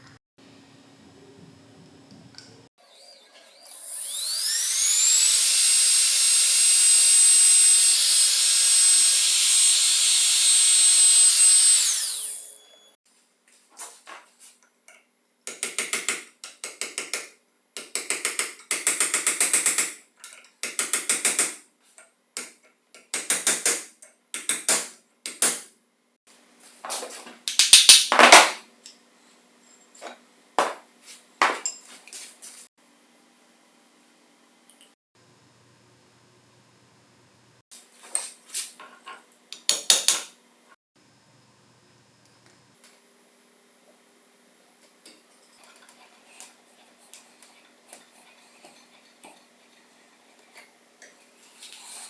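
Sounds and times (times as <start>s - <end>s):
power tool whining: 3.1s - 13.0s.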